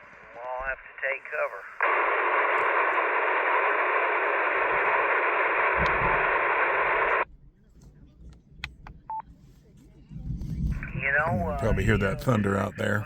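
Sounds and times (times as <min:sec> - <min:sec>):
radio receiver static hiss: 0:00.0 - 0:07.3, 0:10.6 - 0:13.0
faint low rumble: 0:00.0 - 0:13.0.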